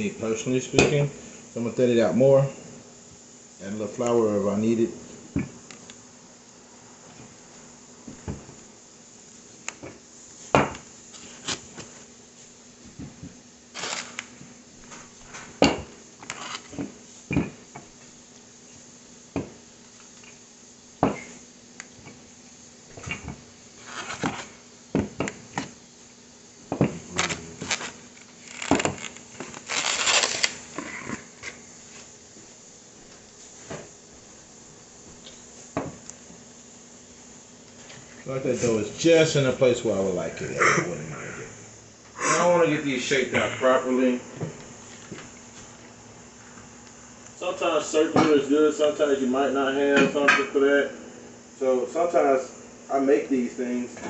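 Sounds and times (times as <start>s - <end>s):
rolling pin scraping dough: 23.0s - 24.6s.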